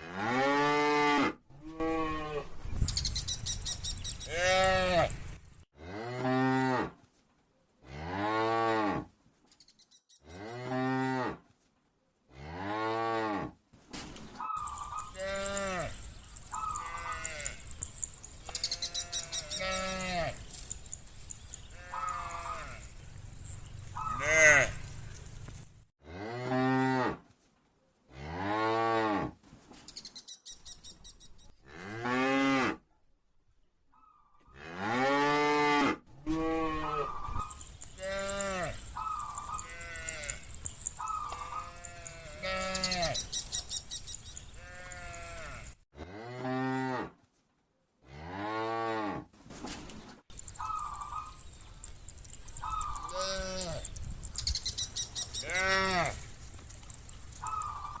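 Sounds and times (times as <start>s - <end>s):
cattle mooing: 4.3s - 5.2s, 14.6s - 25.0s, 34.6s - 43.3s, 44.6s - 47.0s, 55.4s - 58.0s.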